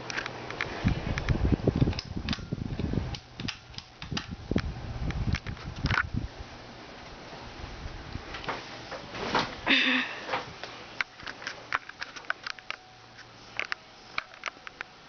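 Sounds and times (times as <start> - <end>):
ceiling fan whoosh: 0.0 - 11.7
loud breathy noise: 9.7 - 10.4.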